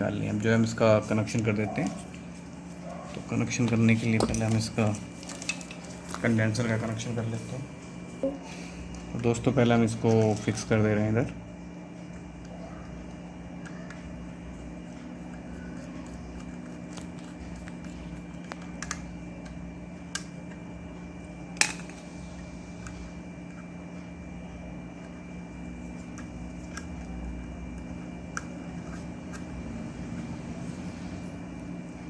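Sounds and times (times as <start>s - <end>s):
steady background hum: 0.0s - 32.0s.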